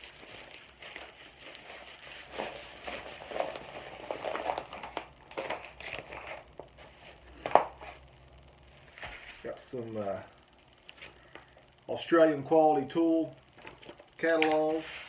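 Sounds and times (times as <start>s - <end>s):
packing material rustling and crinkling: 0.0s - 8.1s.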